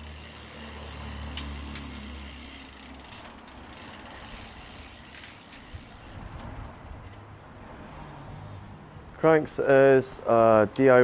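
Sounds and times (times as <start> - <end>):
mechanical clicks and ratcheting: 0.0 - 6.8.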